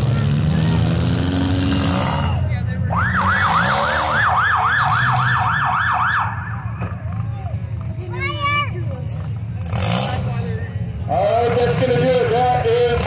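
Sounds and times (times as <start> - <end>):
engines running: 0.0 - 13.0
siren yelping: 2.9 - 6.7.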